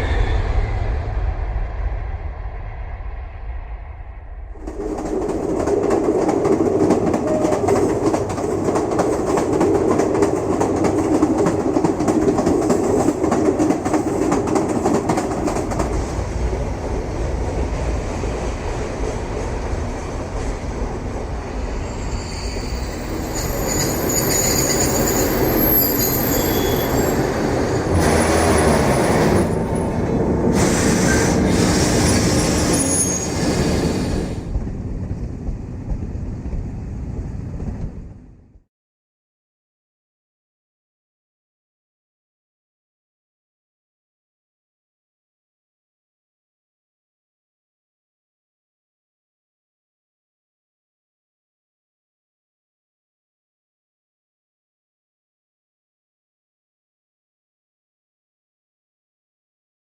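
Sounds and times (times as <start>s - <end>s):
train wheels rumbling on rails: 0.0s - 38.6s
high wheel squeal: 21.8s - 30.0s, 30.6s - 34.4s.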